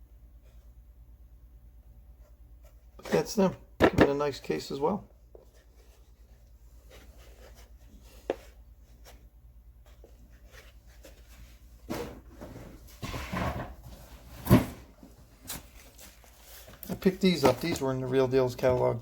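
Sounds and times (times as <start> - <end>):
rustling: 5.4 - 19.0.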